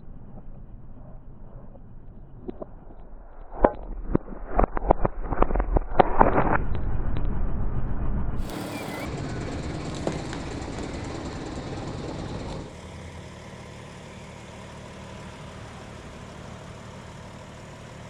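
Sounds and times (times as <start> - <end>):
car rumble: 0.0 - 18.0
engine hum: 8.2 - 18.0.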